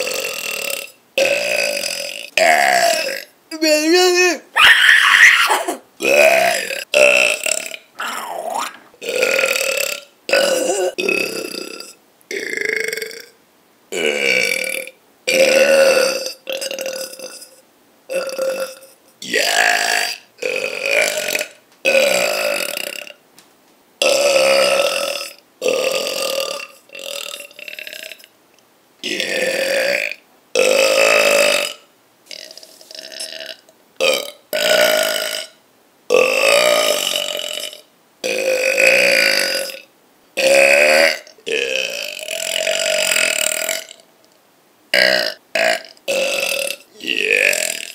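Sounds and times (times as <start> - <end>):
person burping: 0.0 - 3.3, 5.4 - 13.3, 40.4 - 44.0, 45.0 - 47.9.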